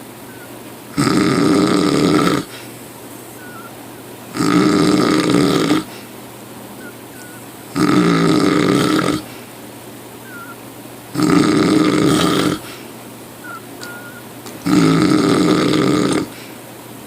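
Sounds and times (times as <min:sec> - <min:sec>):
loud snoring: 0:00.3 - 0:02.7, 0:04.3 - 0:06.0, 0:07.2 - 0:09.4, 0:10.3 - 0:12.8, 0:13.5 - 0:16.4.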